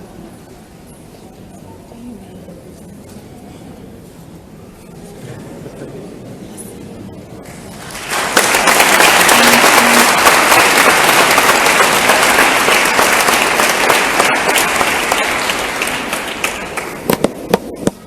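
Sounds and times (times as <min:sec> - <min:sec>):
audience applauding: 0:07.5 - 0:17.7.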